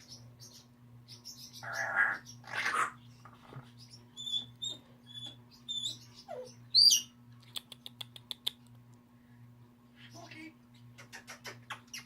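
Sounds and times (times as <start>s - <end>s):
parrots whistling and chirping: 1.3s - 3.0s, 3.9s - 7.1s.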